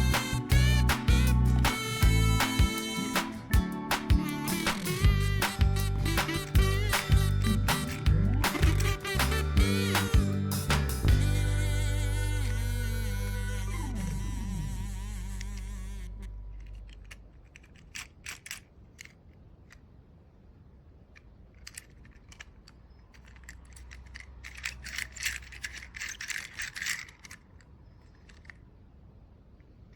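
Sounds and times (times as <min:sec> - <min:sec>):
background music: 0:00.0 - 0:14.4
small hard objects clicking: 0:16.5 - 0:19.8, 0:21.2 - 0:28.7.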